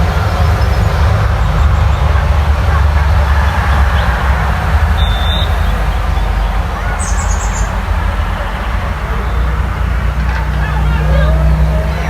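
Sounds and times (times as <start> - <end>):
faint children's voices: 0.0 - 12.0
bird-like chirp: 3.5 - 12.0.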